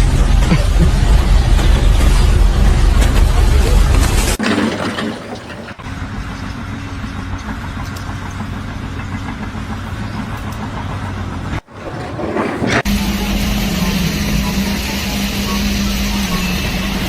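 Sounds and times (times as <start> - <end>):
machine engine humming: 5.8 - 17.0.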